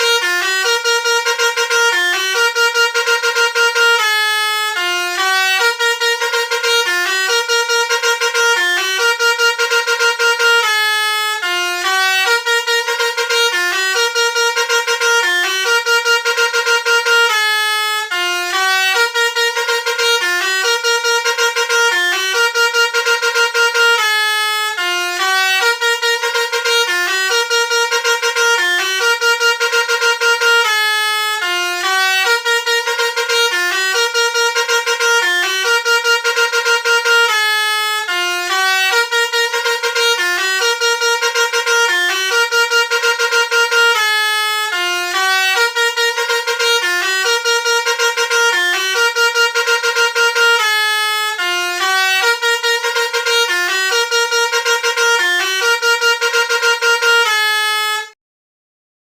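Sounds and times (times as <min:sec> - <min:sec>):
multi-tone bus horn playing tune: 0:00.0 - 0:58.2.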